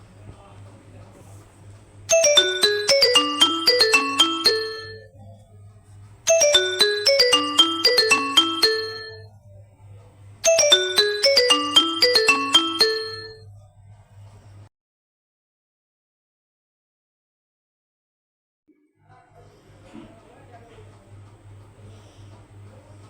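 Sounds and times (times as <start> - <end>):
bell-like phone ringtone: 2.1 - 5.2, 6.3 - 9.3, 10.4 - 13.4.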